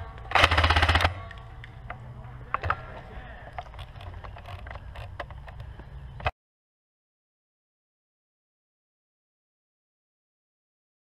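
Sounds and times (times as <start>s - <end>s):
automatic airsoft gunfire: 0.3s - 1.3s.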